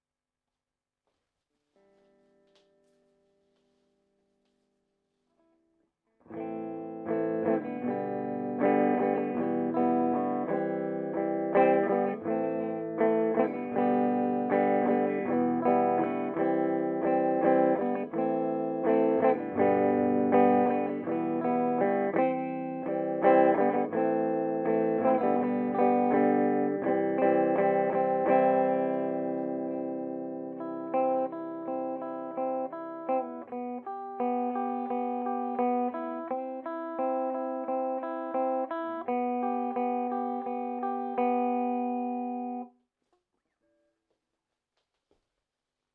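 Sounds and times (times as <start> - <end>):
clean electric guitar playing: 6.3 - 42.7.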